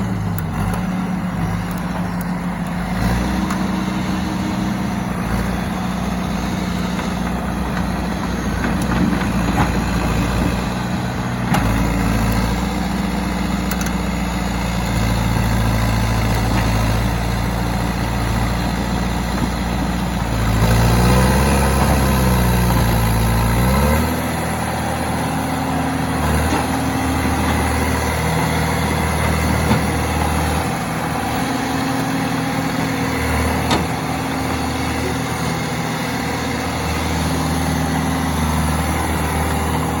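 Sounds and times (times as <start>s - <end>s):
diesel engine running: 0.0s - 40.0s.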